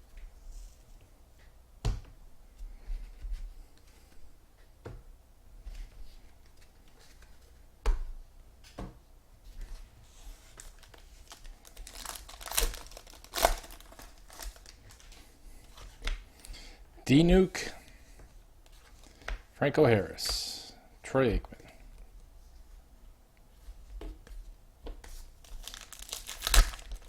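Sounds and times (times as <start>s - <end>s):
foil wrappers crinkling and tearing: 10.6s - 15.1s, 25.4s - 27.0s.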